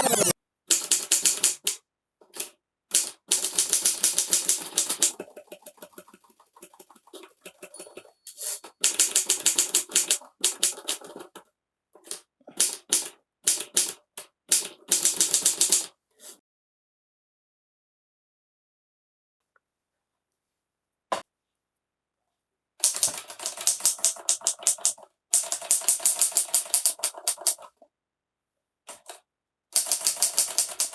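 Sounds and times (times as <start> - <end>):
typewriter keystroke clicks: 29.8 - 30.9.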